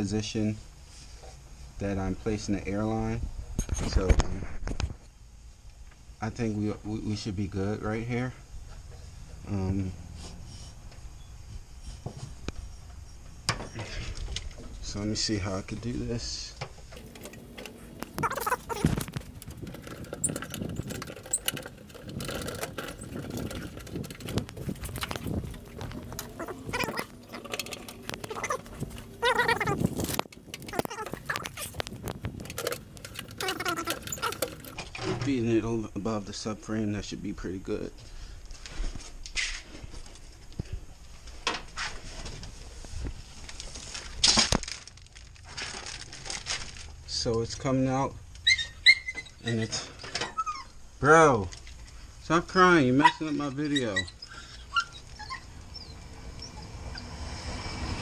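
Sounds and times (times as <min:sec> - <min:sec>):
plastic air line rustling and scraping: 0:16.9 - 0:35.2, 0:38.4 - 0:47.3.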